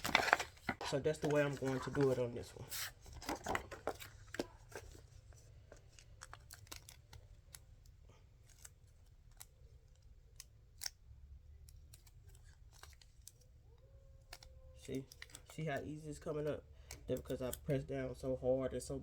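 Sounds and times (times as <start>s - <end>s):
hands handling plastic film and tape: 0.0s - 17.7s.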